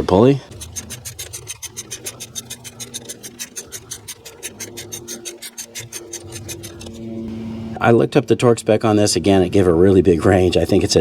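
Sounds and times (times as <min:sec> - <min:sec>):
ratchet wrench clicking: 0:00.5 - 0:07.0.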